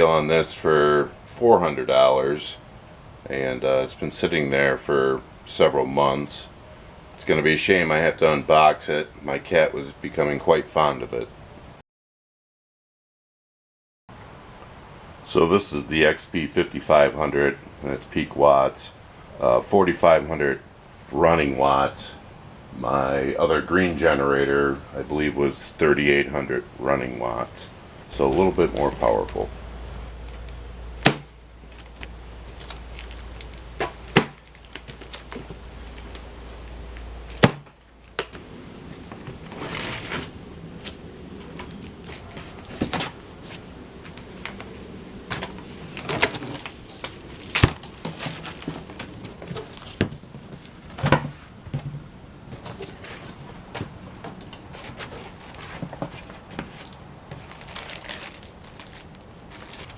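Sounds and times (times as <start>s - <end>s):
sharp thumps: 31.0s - 31.4s, 37.3s - 38.4s.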